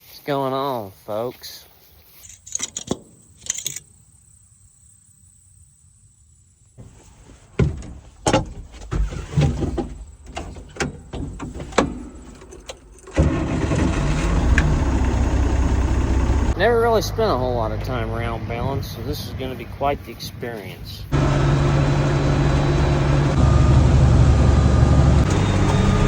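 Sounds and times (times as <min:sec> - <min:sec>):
clunks and low rumbling: 0:07.6 - 0:19.8, 0:21.0 - 0:26.0
tractor diesel engine running: 0:08.7 - 0:26.0.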